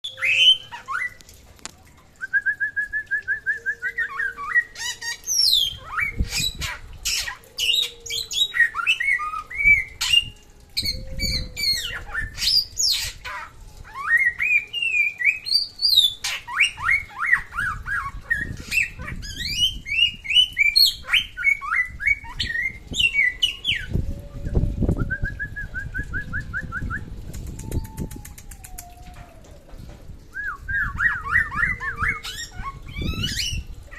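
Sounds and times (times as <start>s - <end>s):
songbird singing: 30.3s - 33.9s.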